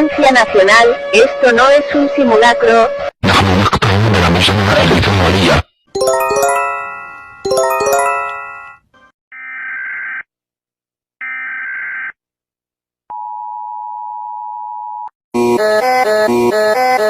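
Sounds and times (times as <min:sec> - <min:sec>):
steady alert tone: 0:06.0 - 0:08.7.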